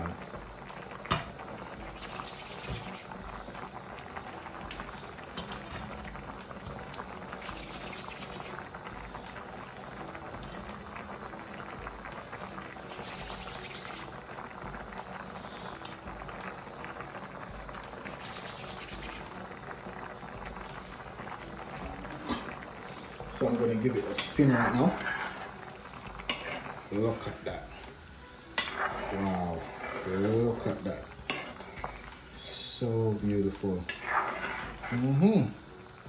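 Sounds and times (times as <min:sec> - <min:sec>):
stew bubbling at a simmer: 0:00.0 - 0:36.0
loud hissing: 0:20.7 - 0:35.8.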